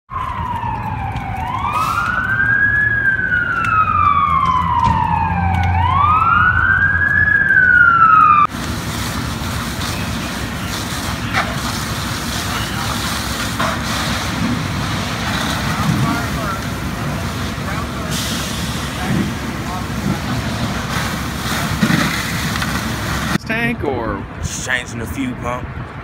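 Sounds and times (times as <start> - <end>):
siren wailing: 0.1 - 8.5
low engine rumble: 0.1 - 24.6.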